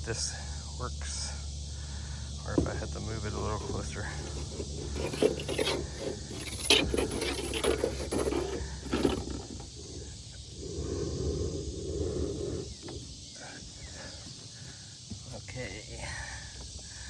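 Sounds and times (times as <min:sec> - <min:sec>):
metal pole knocks and scrapes: 0:02.5 - 0:09.7.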